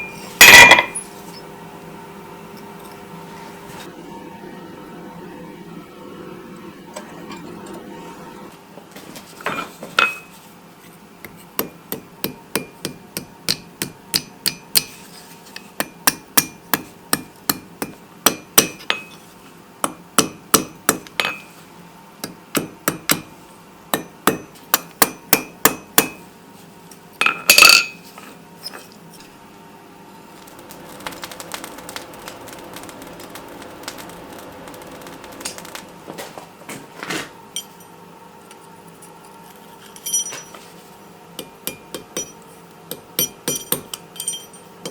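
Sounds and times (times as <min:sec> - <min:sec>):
loud metal clang: 0:00.0 - 0:01.0
hammer striking steel on anvil: 0:00.0 - 0:01.1, 0:11.2 - 0:15.0, 0:15.8 - 0:19.2, 0:19.8 - 0:21.5, 0:22.2 - 0:23.3, 0:23.9 - 0:26.2, 0:41.4 - 0:44.9.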